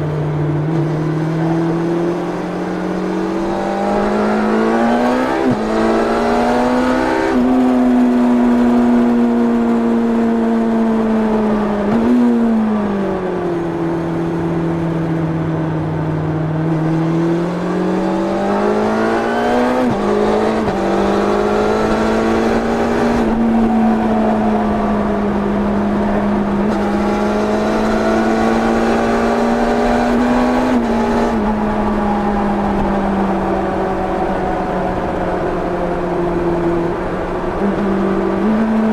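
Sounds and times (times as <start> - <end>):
motorcycle engine while riding: 0.0 - 38.9.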